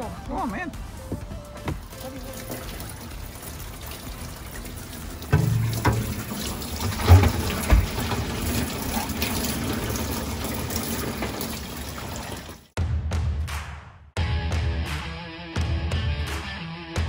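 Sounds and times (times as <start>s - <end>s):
water pouring and splashing: 1.6s - 12.8s
low knocks: 5.3s - 6.3s.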